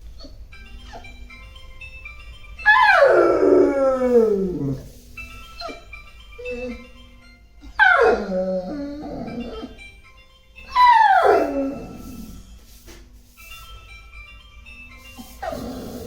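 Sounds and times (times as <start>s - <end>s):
dog whining and howling: 0.0s - 1.2s, 2.6s - 7.0s, 7.6s - 9.9s, 10.6s - 12.5s, 15.2s - 16.0s
background music: 0.0s - 16.0s.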